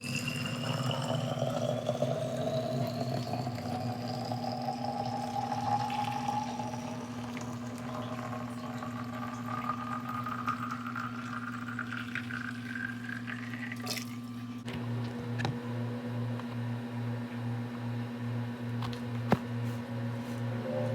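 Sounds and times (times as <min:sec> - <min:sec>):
water running into a container: 0:00.0 - 0:14.6.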